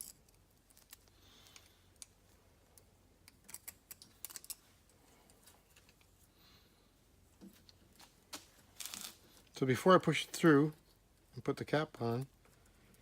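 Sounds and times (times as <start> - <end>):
small metal parts clicking: 0.0 - 2.1, 2.8 - 4.7.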